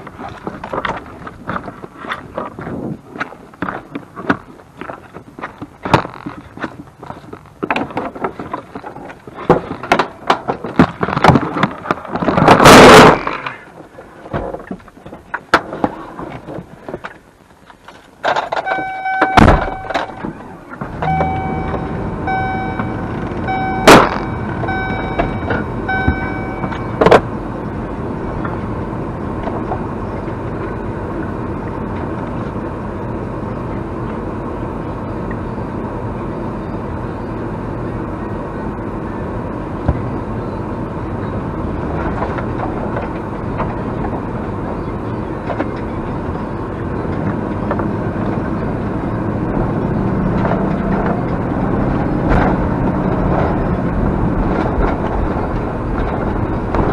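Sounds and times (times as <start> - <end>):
car engine starting and running: 15.8 - 56.9
vehicle doors banging shut: 18.3 - 22.0, 22.6 - 27.2
vehicle warning chime pulsing: 18.6 - 20.3, 20.9 - 27.1.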